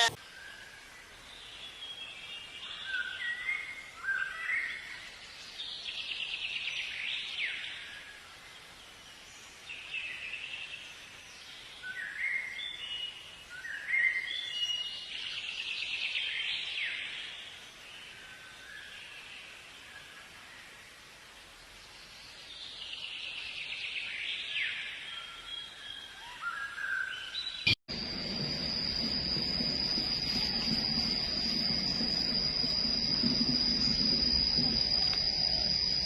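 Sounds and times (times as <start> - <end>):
songbird singing with buzzy trill: 22.5 - 36.0.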